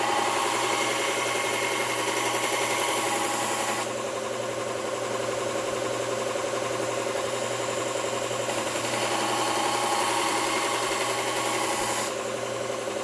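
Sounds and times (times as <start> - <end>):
steel grinding on abrasive belt: 0.0 - 3.9, 8.6 - 12.1
belt grinder motor running: 0.0 - 4.5, 7.0 - 12.9.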